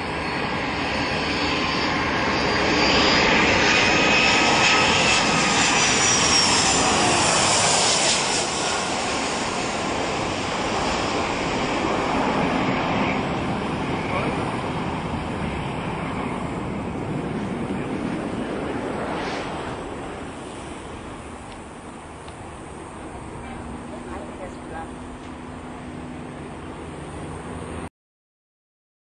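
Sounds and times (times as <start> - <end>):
airplane engine noise: 0.0 - 27.9.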